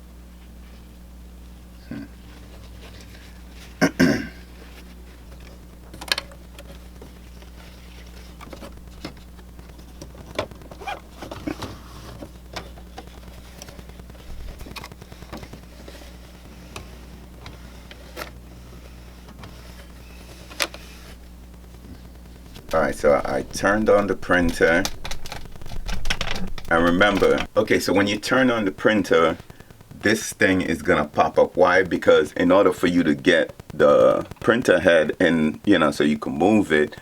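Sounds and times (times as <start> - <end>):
low hum: 0.0 - 35.1
plastic parts clicking: 23.9 - 27.5.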